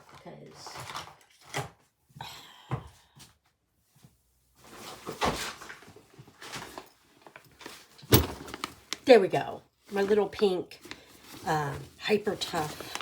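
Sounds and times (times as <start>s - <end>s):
objects knocking and clunking: 5.0s - 9.0s.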